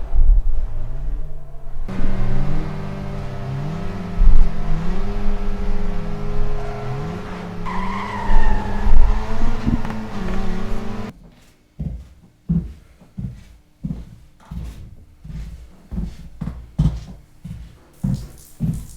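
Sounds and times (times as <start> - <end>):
car engine accelerating: 0.0 - 11.1
tyre squeal: 0.0 - 11.1.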